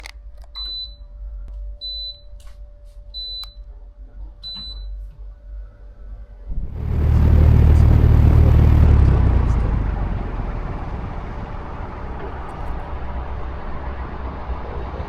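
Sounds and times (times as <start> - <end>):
low hum: 0.0 - 15.0
loud rushing noise: 6.5 - 15.0.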